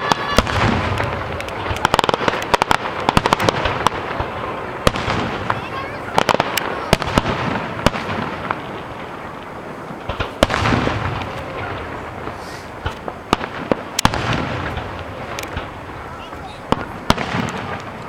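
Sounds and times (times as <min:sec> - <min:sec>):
fireworks bangs with rumble: 0:00.0 - 0:18.0.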